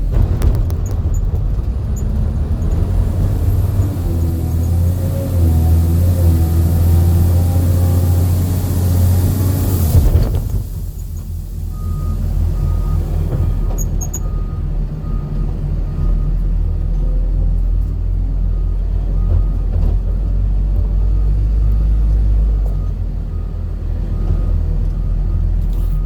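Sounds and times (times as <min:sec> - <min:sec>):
engine low rumble: 0:00.0 - 0:26.0
short electronic beeps: 0:11.8 - 0:14.6.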